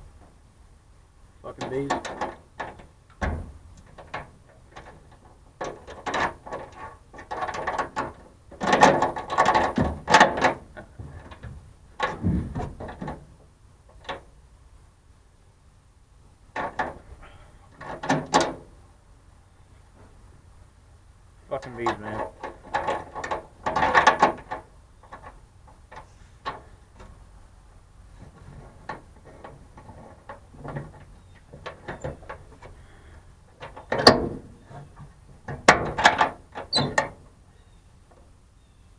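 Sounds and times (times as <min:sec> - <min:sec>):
metal clicking and rattling: 0:01.5 - 0:14.3, 0:16.5 - 0:17.1, 0:17.7 - 0:18.8, 0:21.5 - 0:27.3, 0:28.2 - 0:32.8, 0:33.5 - 0:37.3.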